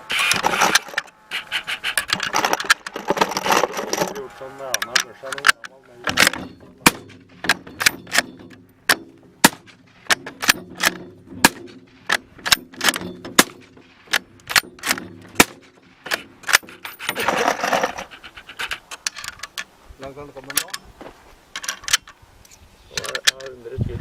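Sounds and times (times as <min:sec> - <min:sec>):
suppressed gunshots: 0:06.0 - 0:13.8.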